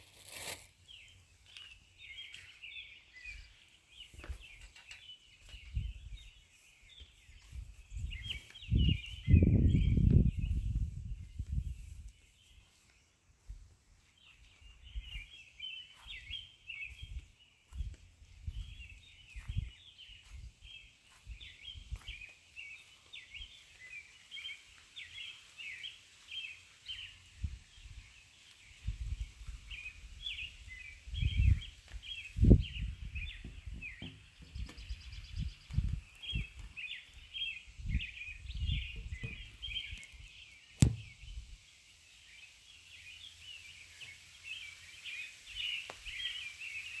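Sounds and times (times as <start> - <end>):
small birds chirping: 0.0 - 47.0
low thumps and bumps: 32.5 - 35.0, 38.7 - 40.0, 40.8 - 41.4.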